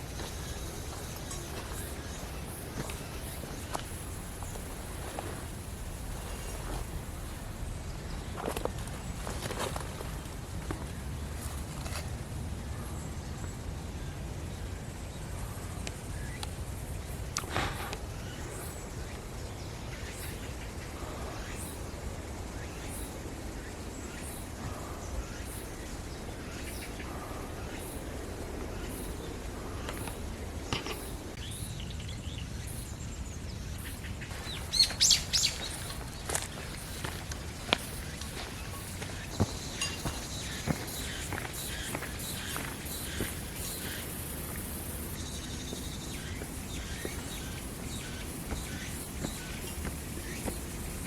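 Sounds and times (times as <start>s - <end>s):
birds chirping: 0.0s - 51.0s
faint bird chirps: 33.8s - 51.0s.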